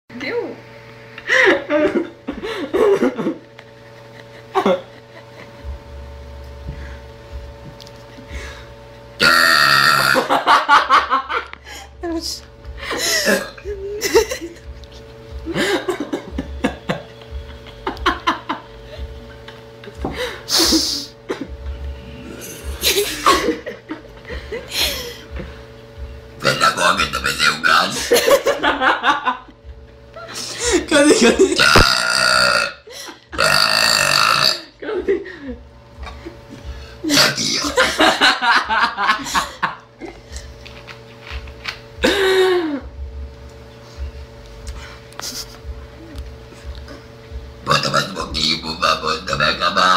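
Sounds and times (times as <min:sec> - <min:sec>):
faint steady hum: 0:00.1 - 0:49.9
people laughing: 0:01.2 - 0:05.6, 0:10.2 - 0:11.8, 0:12.8 - 0:21.6, 0:22.6 - 0:25.6, 0:28.0 - 0:31.6, 0:34.8 - 0:42.9
girl burping: 0:09.2 - 0:10.3, 0:13.2 - 0:13.6, 0:31.5 - 0:32.8, 0:33.4 - 0:34.7.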